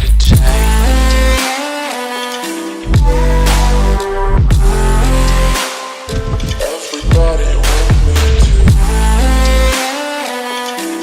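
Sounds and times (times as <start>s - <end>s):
deep bass with falling kick: 0.1s - 1.4s, 3.0s - 5.6s, 7.1s - 9.7s.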